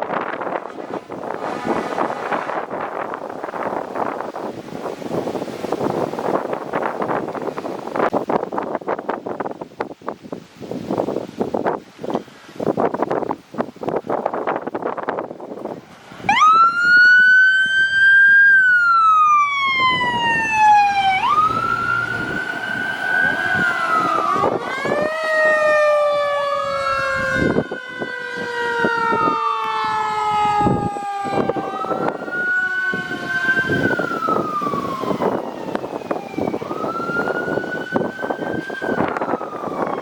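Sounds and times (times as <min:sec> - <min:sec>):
fire engine sirens wailing: 0:00.0 - 0:05.1, 0:16.2 - 0:40.0
low falling siren tone: 0:16.3 - 0:40.0.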